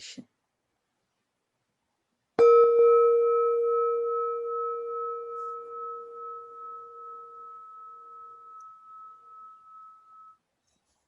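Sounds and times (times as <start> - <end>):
meditation bell ringing: 2.4 - 10.4.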